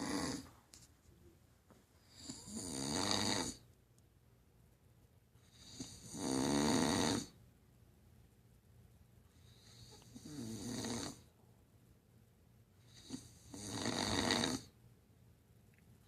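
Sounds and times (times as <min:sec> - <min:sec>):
snoring: 0:00.0 - 0:00.5, 0:02.1 - 0:03.6, 0:05.5 - 0:07.4, 0:09.4 - 0:11.3, 0:12.9 - 0:14.7.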